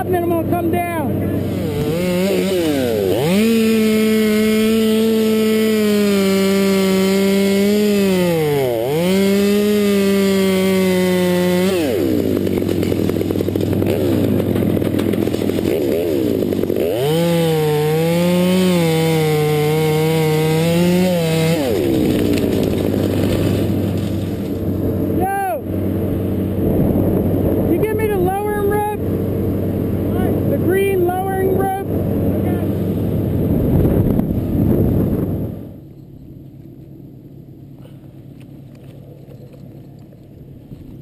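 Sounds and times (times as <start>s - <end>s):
chainsaw revving: 0.7s - 26.6s.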